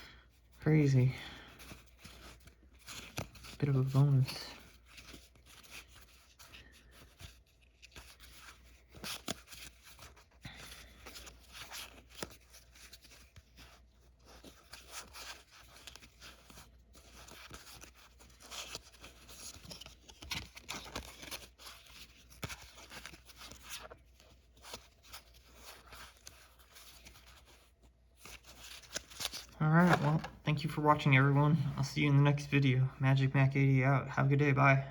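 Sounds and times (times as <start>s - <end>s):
trading cards rustling and sliding: 0.3s - 32.8s.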